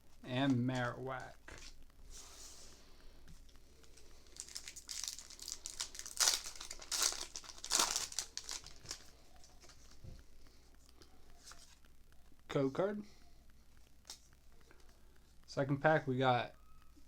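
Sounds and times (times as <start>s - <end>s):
foil wrapper crinkling and tearing: 3.8s - 10.0s.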